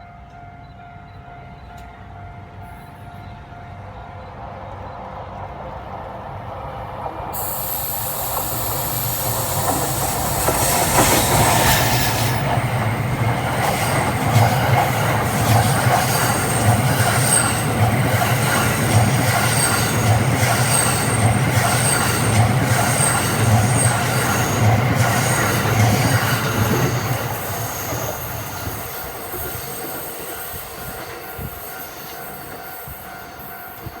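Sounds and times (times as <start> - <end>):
train rumbling past: 0.0 - 34.0
wheels clacking over rail joints: 8.3 - 28.4.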